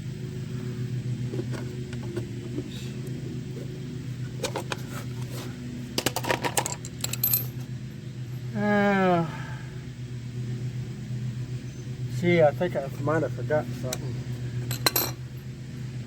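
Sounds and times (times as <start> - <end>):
steady low hum: 0.0 - 16.0
sharp clicks and rattles: 6.0 - 7.5.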